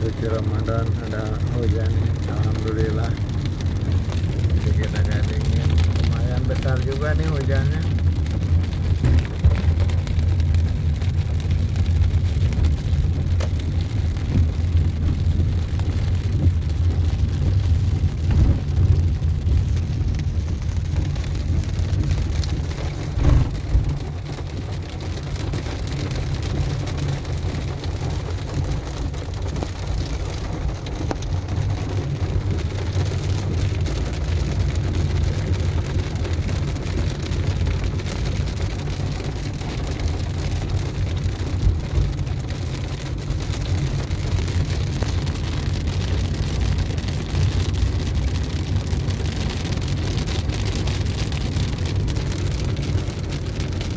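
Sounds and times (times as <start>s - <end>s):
engine and road noise: 0.0s - 53.9s
heavy rain on a car: 0.0s - 53.9s
loud low bump: 8.8s - 10.3s, 18.2s - 19.0s, 23.0s - 24.2s.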